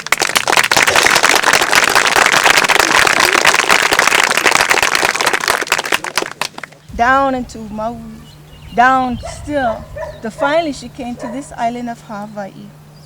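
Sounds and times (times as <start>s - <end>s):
audience applauding: 0.0s - 6.9s.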